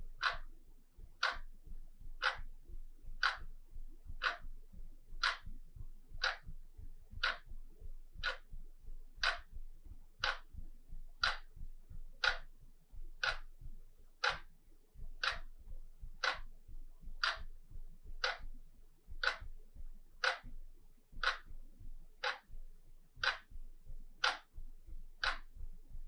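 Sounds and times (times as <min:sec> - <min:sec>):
wall clock ticking: 0:00.0 - 0:26.0.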